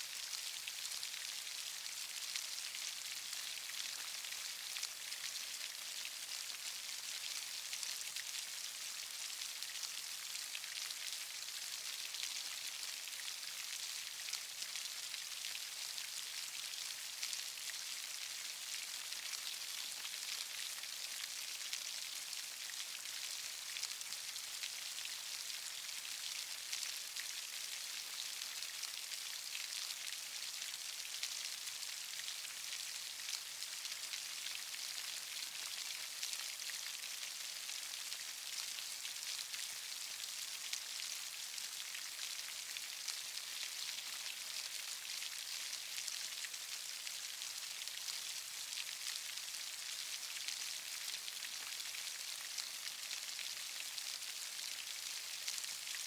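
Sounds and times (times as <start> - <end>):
steady rain falling: 18.8 - 56.0.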